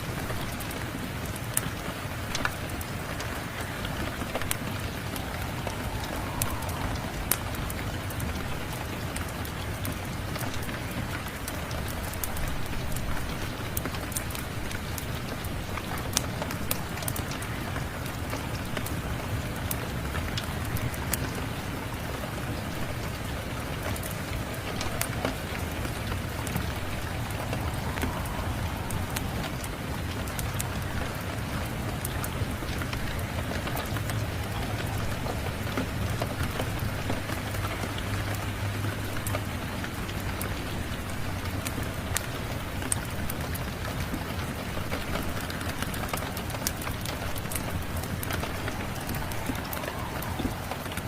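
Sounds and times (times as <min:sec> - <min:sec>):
heavy rain on a surface: 0:00.0 - 0:51.0
wood fire crackling: 0:00.0 - 0:51.0
low rumble: 0:02.2 - 0:13.6, 0:24.3 - 0:37.6.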